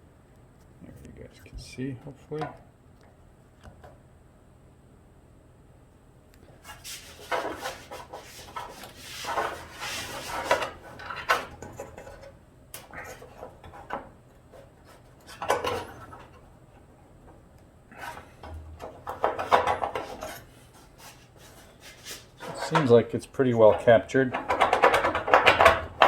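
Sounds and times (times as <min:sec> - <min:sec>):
metal clinking and scraping: 0:17.9 - 0:20.6.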